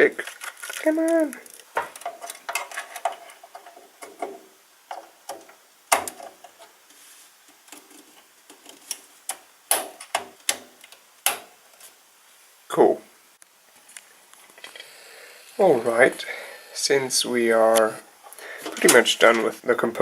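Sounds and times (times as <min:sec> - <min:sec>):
slot latches snapping shut: 0:09.3 - 0:11.5.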